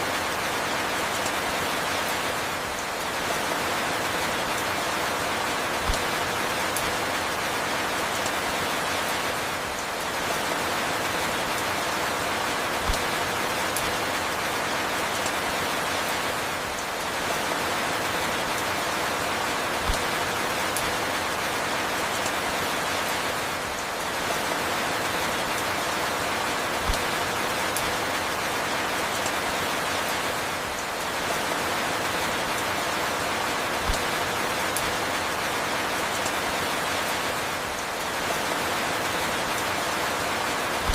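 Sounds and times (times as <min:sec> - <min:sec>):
rain hissing and pattering: 0:00.0 - 0:40.9.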